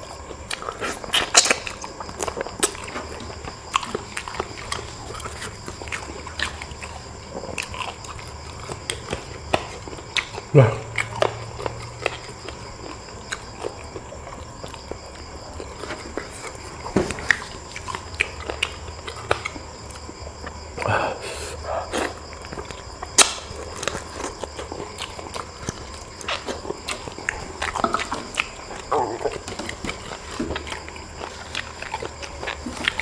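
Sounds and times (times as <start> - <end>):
person chewing and smacking: 0.0 - 33.0.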